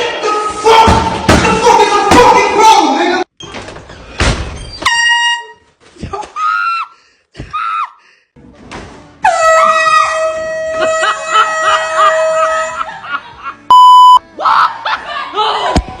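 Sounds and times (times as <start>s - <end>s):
loud short beep: 13.7s - 14.2s.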